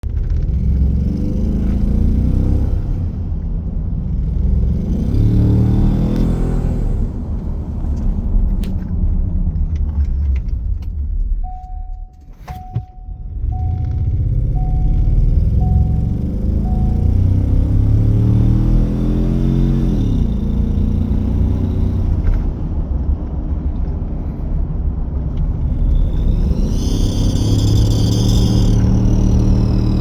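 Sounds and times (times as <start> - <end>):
car engine revving: 0.1 - 8.8, 13.3 - 23.3, 25.3 - 30.0
beeping chime: 11.4 - 17.6.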